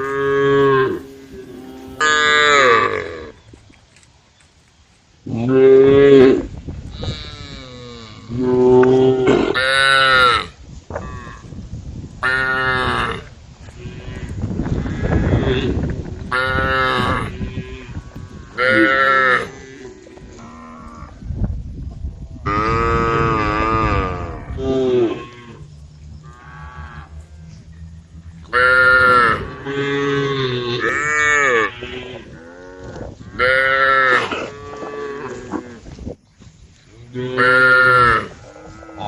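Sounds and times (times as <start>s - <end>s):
cows mooing: 0.0s - 3.4s, 12.2s - 21.2s, 22.4s - 35.9s, 37.0s - 39.0s.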